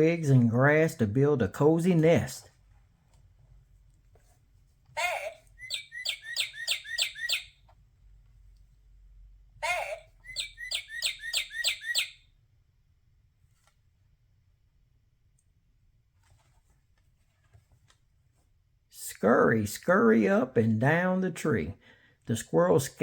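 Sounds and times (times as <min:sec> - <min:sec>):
recorded bird song from speaker: 0:05.0 - 0:07.7, 0:09.6 - 0:12.4.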